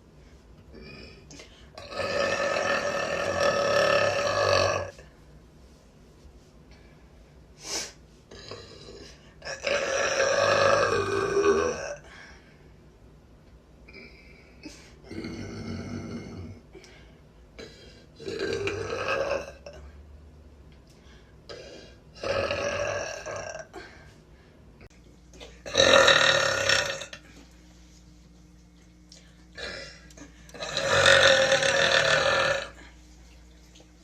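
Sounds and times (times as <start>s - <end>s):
woman burping loudly: 0.8s - 5.0s, 8.3s - 12.0s, 18.2s - 19.8s, 22.2s - 23.8s, 25.5s - 27.2s, 29.6s - 32.8s.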